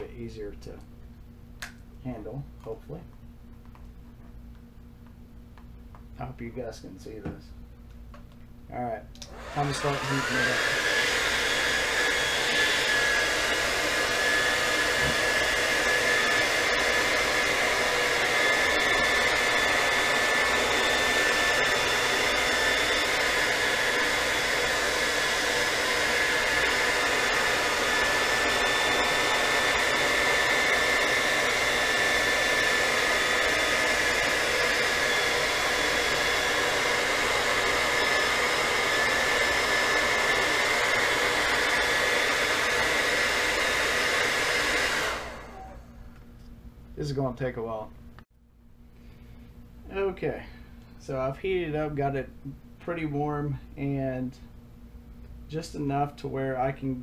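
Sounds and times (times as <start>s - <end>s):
hair dryer running: 9.2s - 46.3s.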